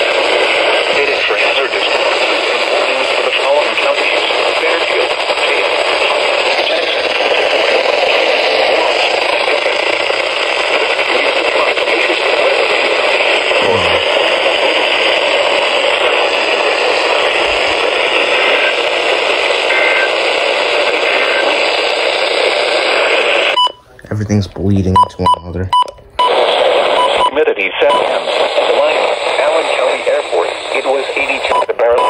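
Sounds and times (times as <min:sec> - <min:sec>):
radio static hiss: 0:00.0 - 0:32.0.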